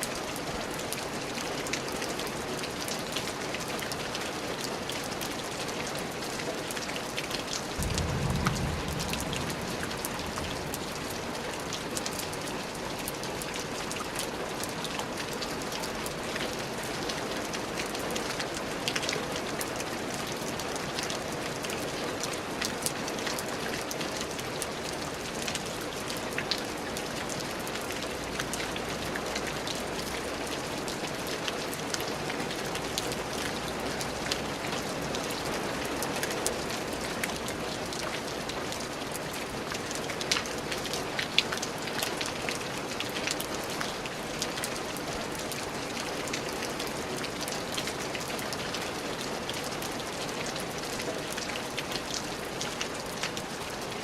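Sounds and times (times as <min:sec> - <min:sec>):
steady rain falling: 0:00.0 - 0:54.0
low rumble: 0:07.8 - 0:12.0.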